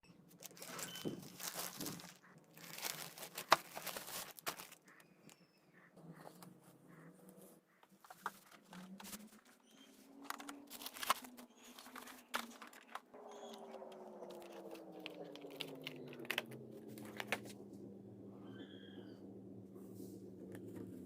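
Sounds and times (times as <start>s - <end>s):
packaging crinkling and tearing: 0.3s - 5.0s, 8.1s - 17.6s
steady hum: 12.6s - 21.0s.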